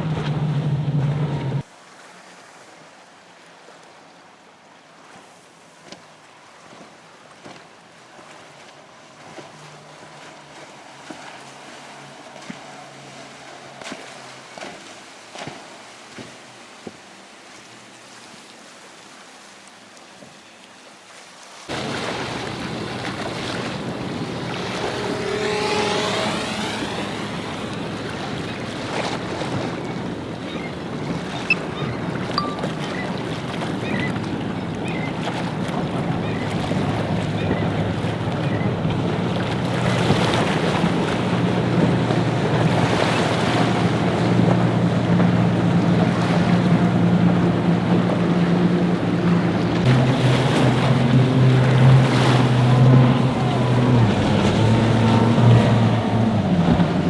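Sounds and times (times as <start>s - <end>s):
motorboat engine: 0.0s - 1.7s, 8.0s - 15.0s, 21.7s - 57.0s
rushing water and surf: 0.0s - 57.0s
waves breaking: 0.0s - 57.0s
wind buffeting microphone: 21.7s - 57.0s.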